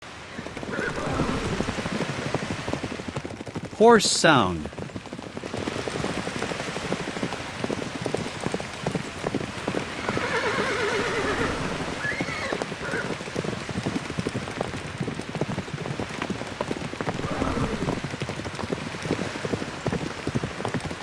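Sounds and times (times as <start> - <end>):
horse whinnying: 0.6 - 1.8, 9.9 - 13.2, 17.1 - 18.1
dense patter of small clicks: 4.7 - 9.9.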